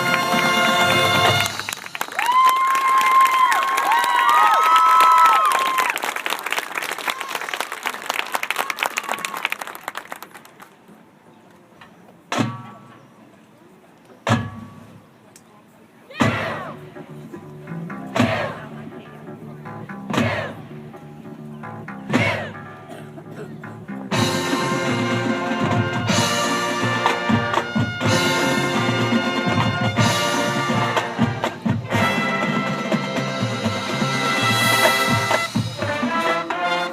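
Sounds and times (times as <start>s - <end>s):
marching band brass and drum hit: 0.0s - 1.9s, 12.3s - 12.9s, 14.2s - 15.0s, 16.1s - 17.0s, 17.9s - 18.8s, 19.7s - 20.7s, 21.7s - 23.1s, 23.7s - 36.9s
crowd applause: 0.0s - 10.8s.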